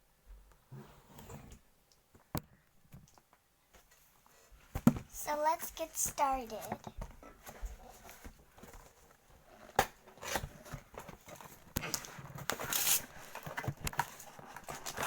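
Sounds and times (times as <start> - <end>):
packaging rustling: 7.4 - 15.0.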